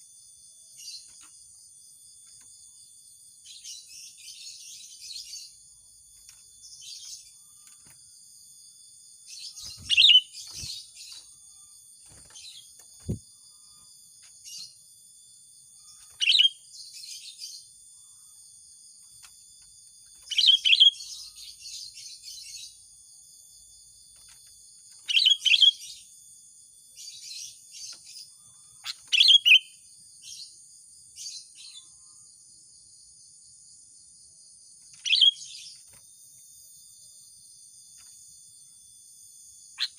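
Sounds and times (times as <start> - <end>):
high insect buzz: 0.0 - 29.2.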